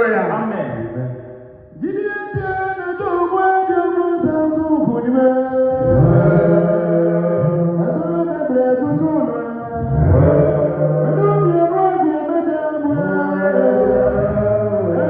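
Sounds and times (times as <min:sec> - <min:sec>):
voices chanting in long held notes: 0:05.6 - 0:15.0.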